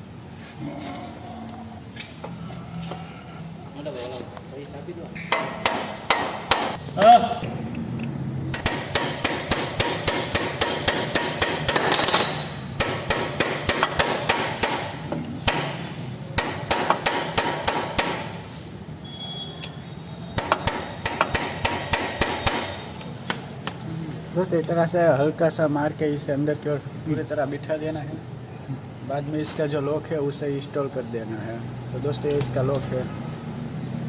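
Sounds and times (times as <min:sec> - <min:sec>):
hammer tapping rapidly: 0:05.3 - 0:06.8, 0:16.4 - 0:18.3.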